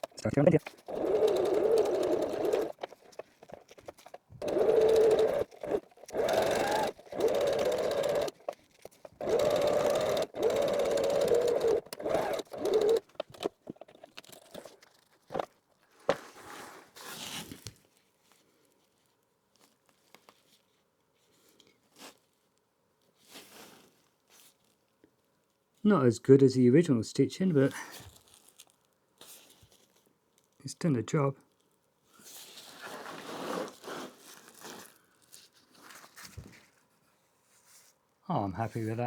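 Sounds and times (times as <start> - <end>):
sewing machine stitching: 0.0 - 15.5.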